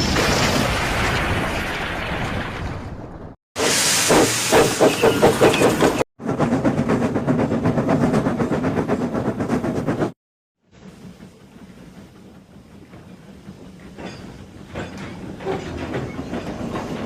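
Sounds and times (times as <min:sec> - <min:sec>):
steam hiss: 0:03.6 - 0:05.4
steam engine chuffing: 0:03.6 - 0:17.0.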